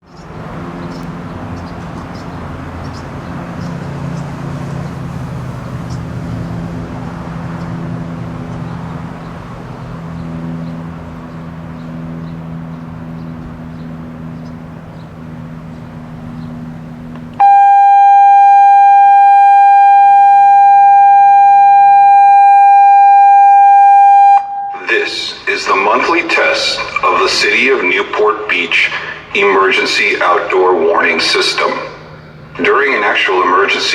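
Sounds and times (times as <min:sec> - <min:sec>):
drone of vehicles: 0:00.0 - 0:33.9
loud electronic siren tone: 0:17.4 - 0:26.2.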